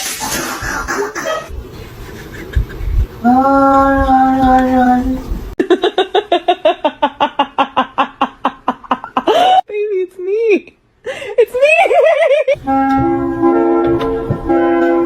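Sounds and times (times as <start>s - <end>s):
vocal repeated pulses: 0.1s - 1.5s.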